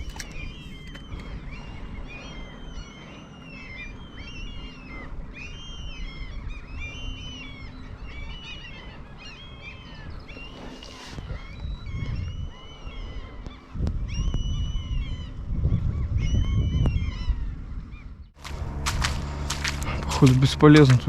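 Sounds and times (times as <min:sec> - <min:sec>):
small birds chirping: 0:00.0 - 0:21.0
steady low rumble: 0:11.2 - 0:21.0.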